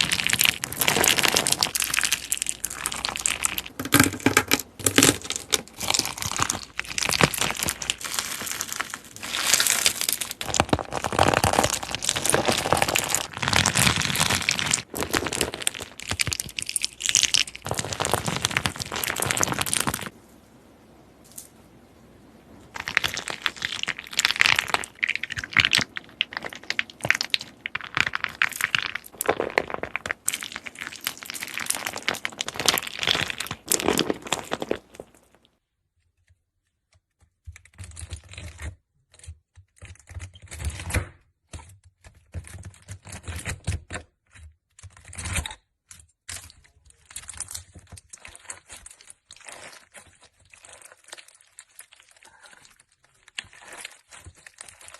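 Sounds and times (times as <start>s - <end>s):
slime crackling and popping: 0.0s - 20.1s, 22.7s - 35.5s, 46.2s - 54.9s.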